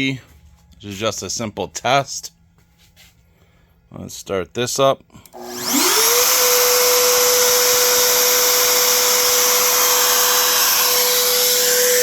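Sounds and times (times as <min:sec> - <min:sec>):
electric motor whine: 0:05.3 - 0:12.0.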